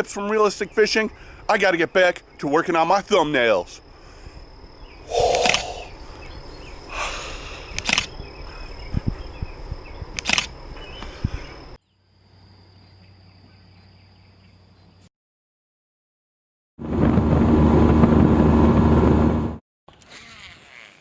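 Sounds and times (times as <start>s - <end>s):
high-pitched insect drone: 0.7s - 13.2s
sharp noises: 5.0s - 6.0s, 6.9s - 8.2s, 10.2s - 10.6s.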